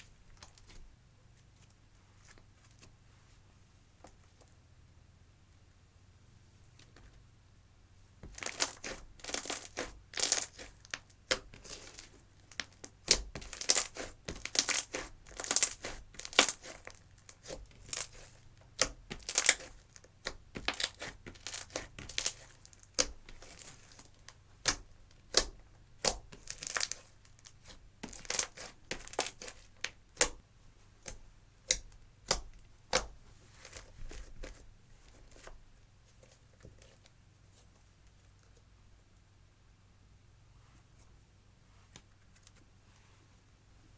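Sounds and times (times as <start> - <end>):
slime squishing and crackling: 8.2 - 30.4, 31.0 - 35.5.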